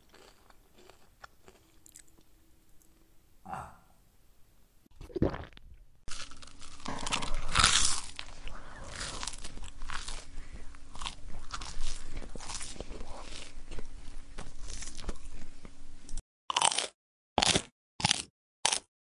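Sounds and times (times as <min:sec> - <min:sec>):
chewing crunchy food: 0:00.0 - 0:02.3, 0:05.0 - 0:15.5, 0:16.5 - 0:18.9
mouth sounds: 0:03.4 - 0:04.0.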